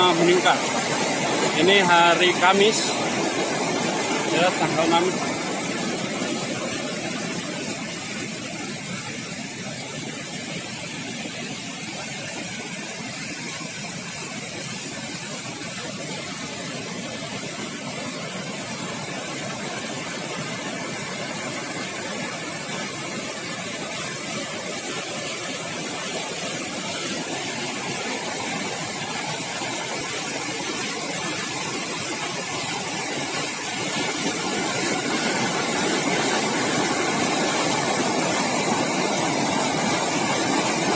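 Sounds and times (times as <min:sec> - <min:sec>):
river water rushing: 0:00.0 - 0:40.9.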